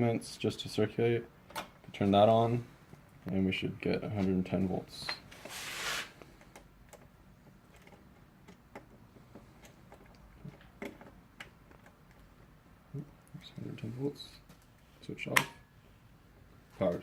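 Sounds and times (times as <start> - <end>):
short rustle: 5.3 - 6.2
faint clicks and taps: 6.2 - 13.7.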